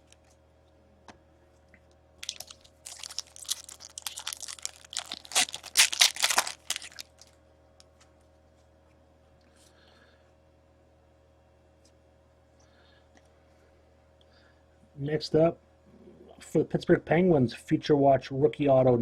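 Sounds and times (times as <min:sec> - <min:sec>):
card packaging rustling: 0:02.2 - 0:07.3.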